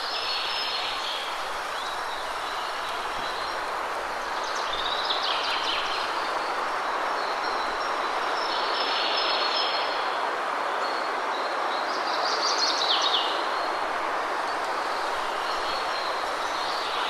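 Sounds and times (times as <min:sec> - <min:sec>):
waterfall rushing: 0:00.0 - 0:08.7, 0:13.3 - 0:17.0.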